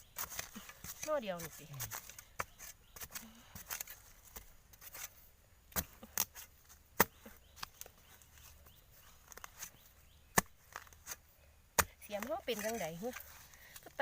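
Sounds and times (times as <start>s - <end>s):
tool chopping bamboo: 5.7s - 7.9s, 10.3s - 11.2s.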